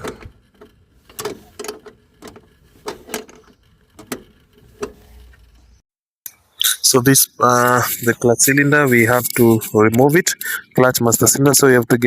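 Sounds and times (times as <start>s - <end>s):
mechanical clicks and knocks: 0.0s - 5.7s.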